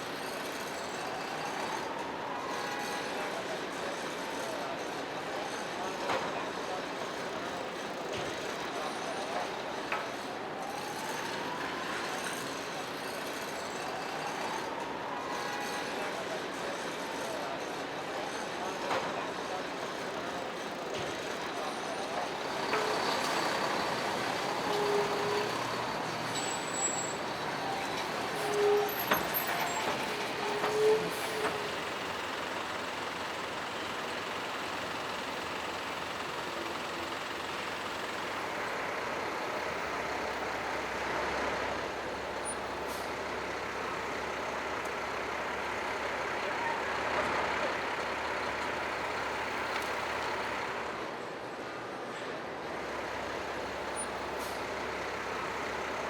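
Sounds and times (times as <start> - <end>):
trucks and buses running: 0.0 - 56.0
air brakes hissing: 22.8 - 32.4, 42.4 - 43.4, 53.8 - 55.2.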